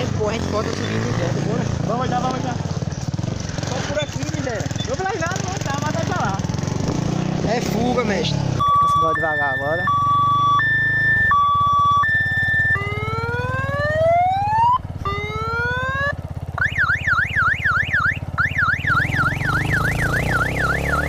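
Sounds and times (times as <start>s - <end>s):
motorcycle engine running: 0.0s - 21.0s
electronic police siren: 8.6s - 21.0s.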